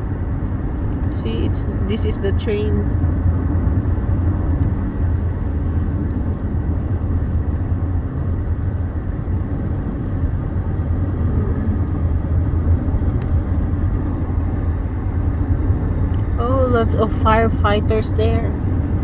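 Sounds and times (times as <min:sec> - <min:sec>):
car engine drone: 0:00.0 - 0:19.0.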